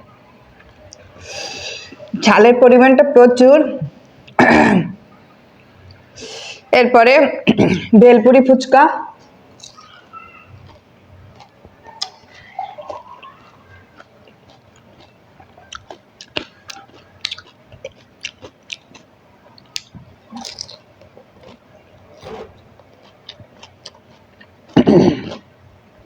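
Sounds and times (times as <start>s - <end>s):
wet chewing: 9.2s - 25.5s.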